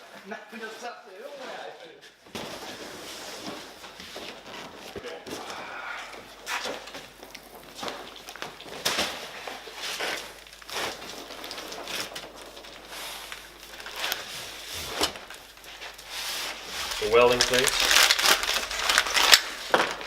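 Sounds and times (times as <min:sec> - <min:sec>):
plastic and cardboard crinkling: 0:02.2 - 0:20.0.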